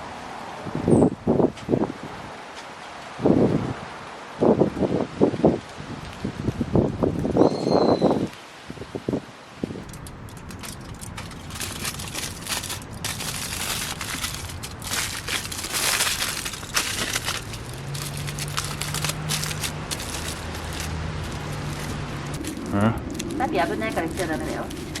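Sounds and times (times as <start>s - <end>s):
aluminium foil crumpling: 9.8s - 25.0s.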